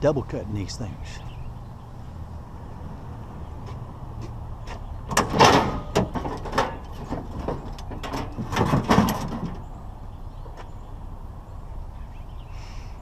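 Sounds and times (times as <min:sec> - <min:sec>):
sheet metal clanking and scraping: 0:05.1 - 0:09.7.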